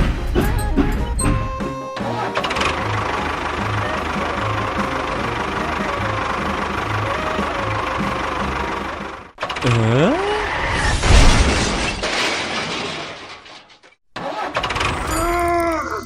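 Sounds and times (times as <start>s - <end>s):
engine running: 0.6s - 9.6s.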